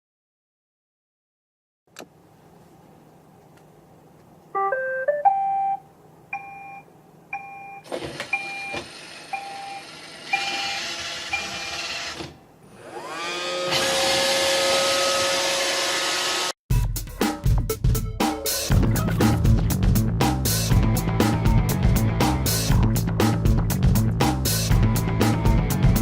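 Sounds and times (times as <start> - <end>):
robot vacuum beeping tune: 4.6 - 5.8, 7.4 - 11.8
robot vacuum beeps: 7.4 - 11.8
vacuum motor and brushes whining: 7.9 - 16.6.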